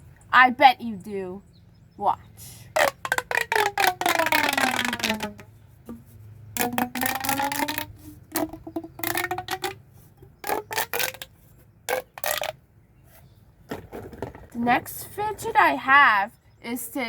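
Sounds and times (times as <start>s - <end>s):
plastic pop tube crackling pops: 2.8s - 12.6s.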